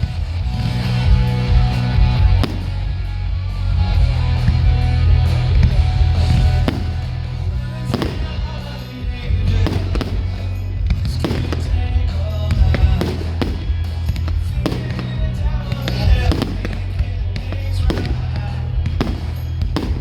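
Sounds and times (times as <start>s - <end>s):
fireworks bursting: 0.0s - 20.0s
music with heavy bass: 0.0s - 20.0s.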